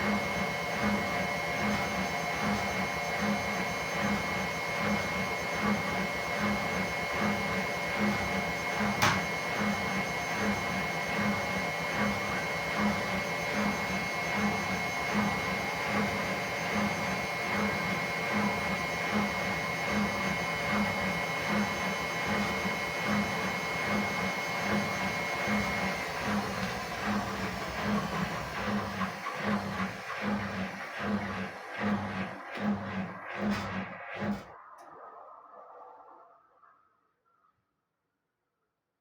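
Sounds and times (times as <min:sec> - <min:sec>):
washing machine spinning: 0:00.0 - 0:35.5.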